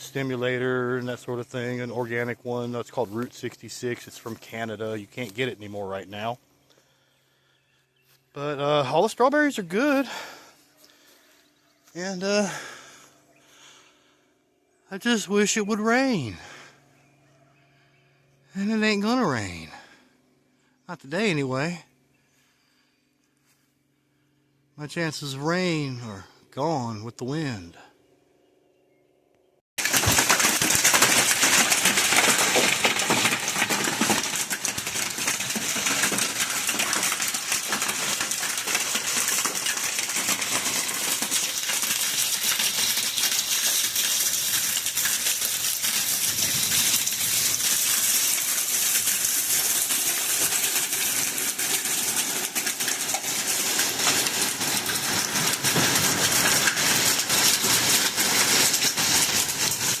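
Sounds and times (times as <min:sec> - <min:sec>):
hail clattering: 0:29.8 - 1:00.0.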